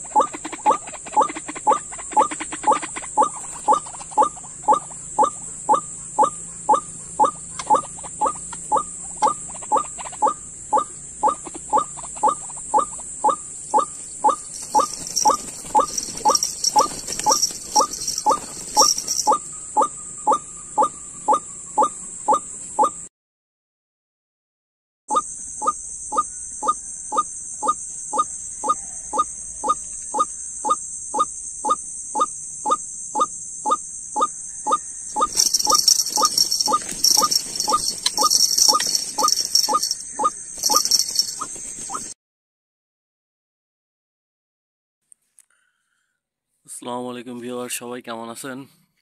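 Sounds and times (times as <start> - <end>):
waterhen calling: 0.0 - 21.9, 34.7 - 42.0.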